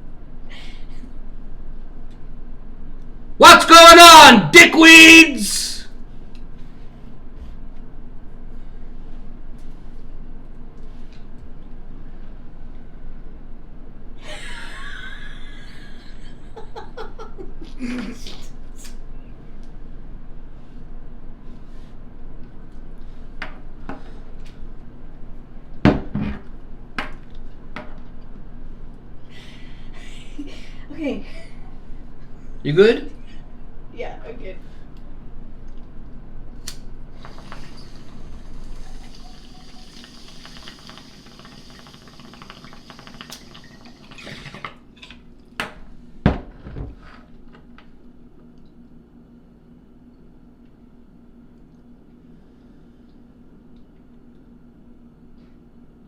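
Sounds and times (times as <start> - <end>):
water with fine crackle: 37.3 - 45.5.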